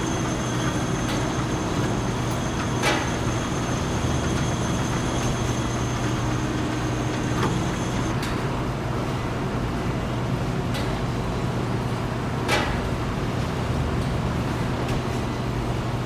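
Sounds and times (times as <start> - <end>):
thin high whine: 0.0 - 8.1
factory machinery humming: 0.0 - 8.2.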